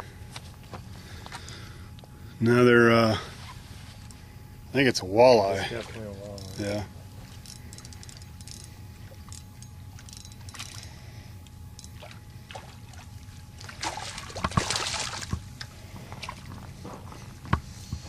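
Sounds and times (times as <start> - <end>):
water sloshing at shoreline: 5.4 - 11.1, 11.8 - 16.6
loud water splash: 13.8 - 15.3.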